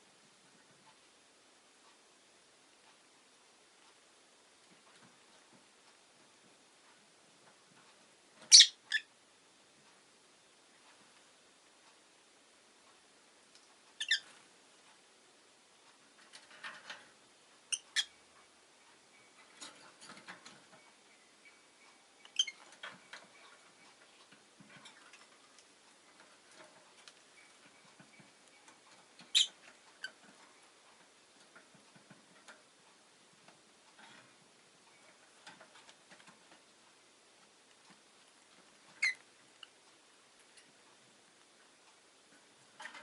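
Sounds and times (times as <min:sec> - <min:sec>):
lovebird chirping: 0:08.4 - 0:09.1, 0:14.0 - 0:14.4, 0:17.7 - 0:19.6, 0:20.7 - 0:24.0, 0:27.2 - 0:30.7, 0:38.9 - 0:39.8.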